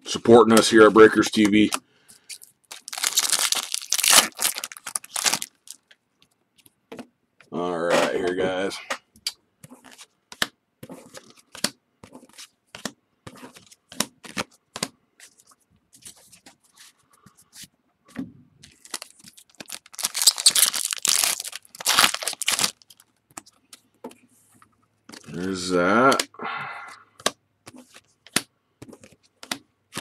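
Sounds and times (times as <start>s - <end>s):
foil wrapper tearing: 1.6s - 5.8s, 18.7s - 23.0s.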